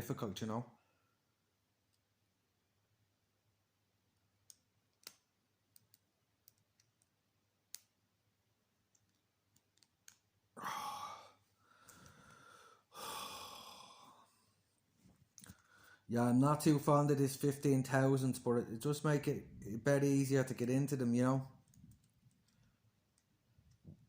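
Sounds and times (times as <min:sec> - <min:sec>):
person sighing heavily: 0:10.6 - 0:14.4.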